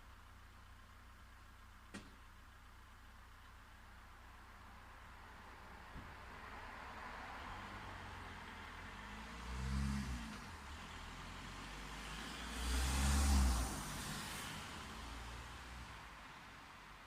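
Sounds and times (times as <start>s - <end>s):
vehicles driving past: 5.1s - 17.0s.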